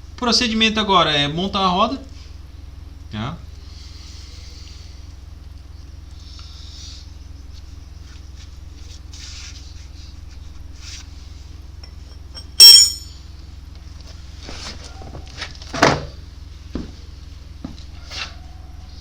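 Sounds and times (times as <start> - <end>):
low hum: 11.8 - 13.2
metal-on-metal clang: 11.8 - 13.2
tools clinking and scraping: 11.8 - 13.2.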